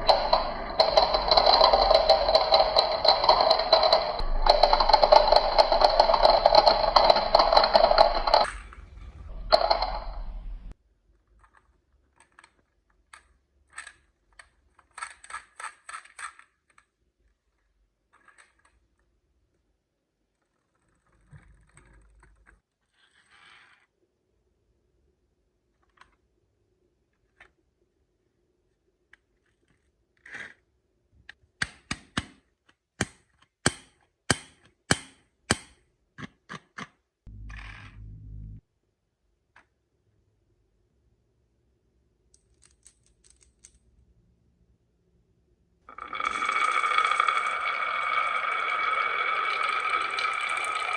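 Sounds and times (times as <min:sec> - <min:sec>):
marbles rattling down wooden run: 0:00.0 - 0:10.6, 0:45.9 - 0:50.9.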